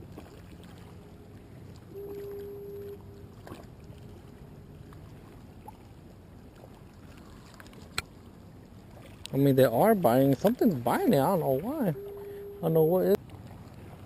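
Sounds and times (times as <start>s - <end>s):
steady hum: 0.0s - 6.6s, 9.8s - 13.2s
water at shore: 0.0s - 14.0s
wind: 0.0s - 14.0s.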